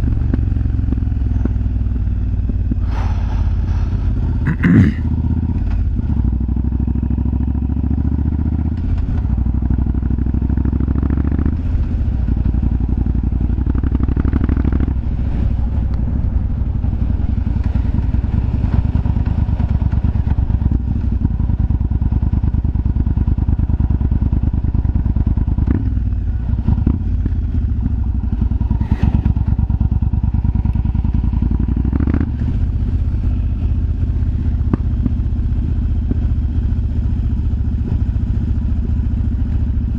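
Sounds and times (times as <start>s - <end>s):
sharp exhaust pops: 0.0s - 6.3s, 24.7s - 33.0s, 34.1s - 36.3s
motorcycle engine running: 0.0s - 39.9s.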